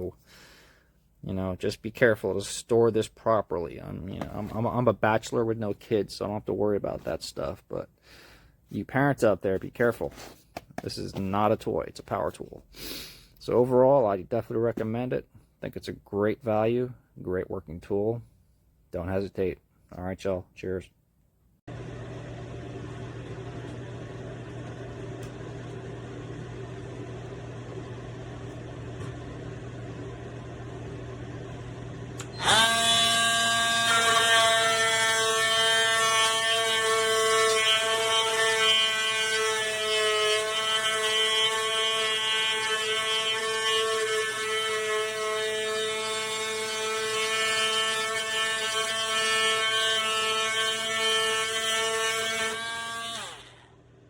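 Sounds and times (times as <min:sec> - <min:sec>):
oscillating multi-tool buzzing: 0:32.2 - 0:53.9.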